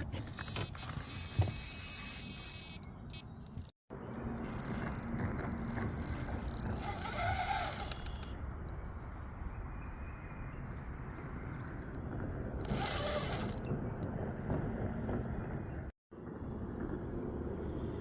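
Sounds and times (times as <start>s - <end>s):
outdoor background noise: 0.0s - 18.0s
fishing reel clicking: 0.2s - 3.7s, 4.4s - 8.3s, 12.6s - 13.7s.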